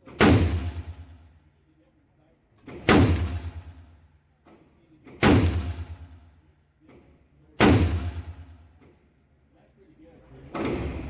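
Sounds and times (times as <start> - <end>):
rifle shots with echo: 0.1 - 1.2, 2.8 - 3.9, 5.2 - 6.3, 7.6 - 8.6.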